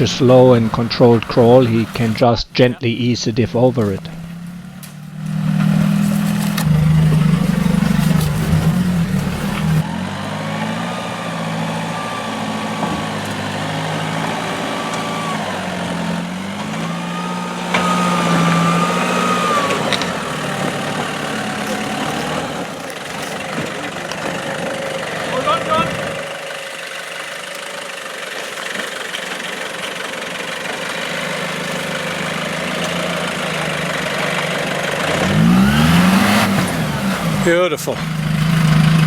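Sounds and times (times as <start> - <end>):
vehicle engine at low revs: 0.0 - 39.0.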